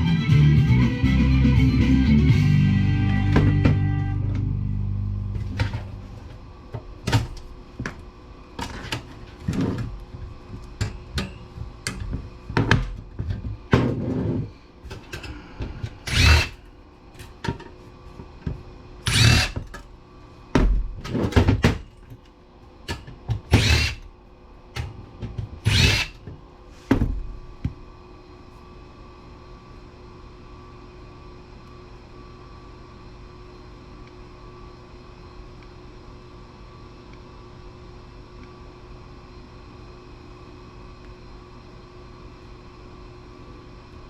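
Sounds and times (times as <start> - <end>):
power drill bursts: 16.0 - 16.6, 19.1 - 19.6, 23.5 - 24.0, 25.6 - 26.2.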